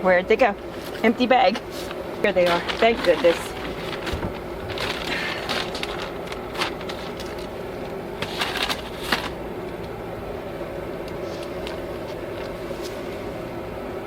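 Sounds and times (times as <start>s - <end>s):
steady low hum: 0.0s - 14.0s
plastic bags crinkling: 1.6s - 9.9s.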